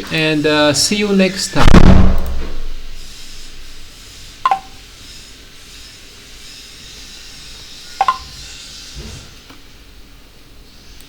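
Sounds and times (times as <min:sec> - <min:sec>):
sharp ringing clicks: 0:04.5 - 0:04.8, 0:08.0 - 0:08.3.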